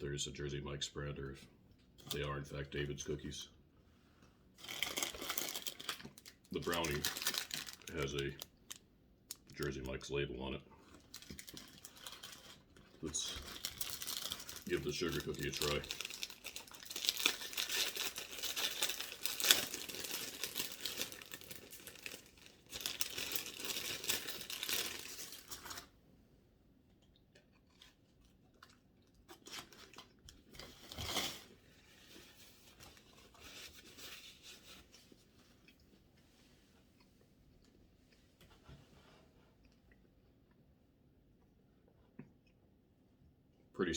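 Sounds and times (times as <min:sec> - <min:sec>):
wrapper tearing and crinkling: 0:04.6 - 0:08.8, 0:10.9 - 0:25.9, 0:29.3 - 0:34.8.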